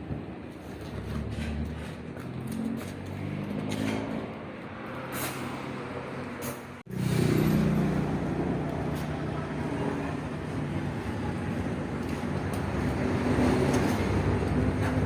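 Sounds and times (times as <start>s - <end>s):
motorcycle engine running: 6.9s - 15.0s.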